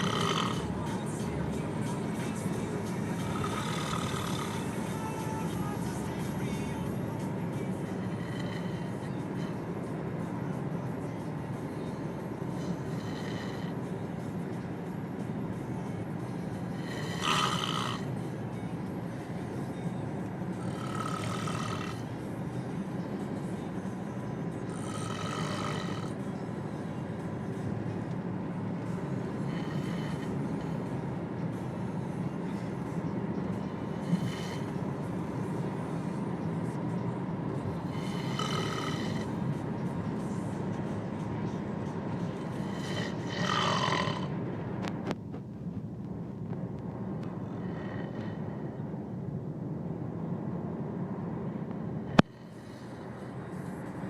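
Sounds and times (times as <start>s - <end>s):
boy snoring loudly: 0.0s - 0.8s, 3.2s - 5.2s, 7.9s - 9.2s, 12.5s - 13.8s, 16.7s - 18.1s, 20.6s - 22.2s, 24.6s - 26.2s, 29.4s - 30.4s, 33.9s - 34.8s, 37.9s - 39.4s, 42.5s - 44.3s, 47.6s - 48.5s
steady low rumble: 0.0s - 38.4s, 39.1s - 54.0s.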